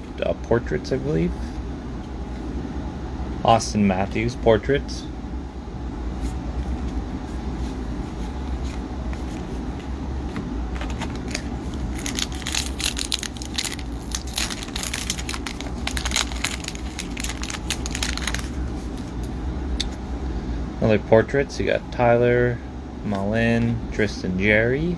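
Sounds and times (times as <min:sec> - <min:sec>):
card pack crinkling: 0:10.7 - 0:19.3.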